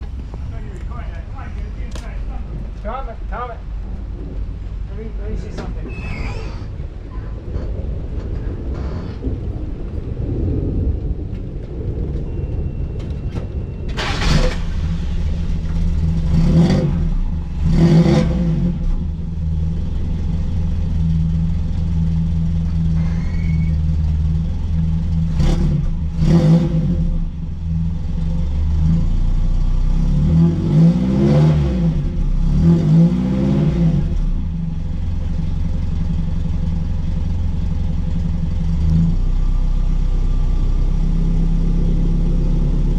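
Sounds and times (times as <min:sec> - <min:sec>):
car engine idling: 0:00.0 - 0:05.9, 0:06.6 - 0:30.1, 0:34.0 - 0:42.9
engine throttle blips: 0:06.6 - 0:32.6
engine revving: 0:14.0 - 0:20.0, 0:25.0 - 0:27.8, 0:28.8 - 0:34.5.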